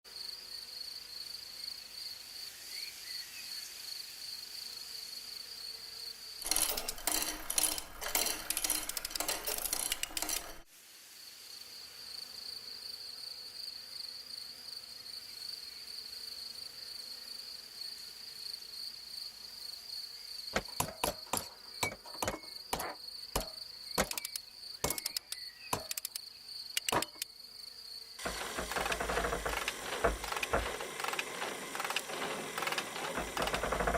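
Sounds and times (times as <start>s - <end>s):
loud rustling clatter: 6.4s - 10.7s, 28.2s - 33.9s
sharp clicks: 6.4s - 10.7s, 20.6s - 26.2s, 26.8s - 27.3s, 28.2s - 33.9s
insect trilling: 20.6s - 27.3s, 28.2s - 33.9s.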